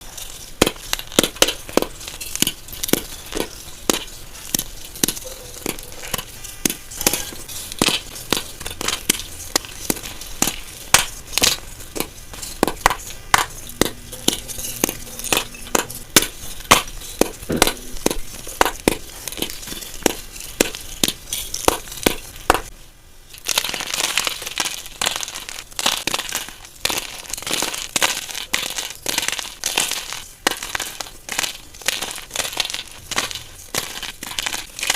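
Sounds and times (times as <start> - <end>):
chalk crunching: 0.0 - 22.8, 23.4 - 34.9
chalk pieces snapping: 23.6 - 34.9.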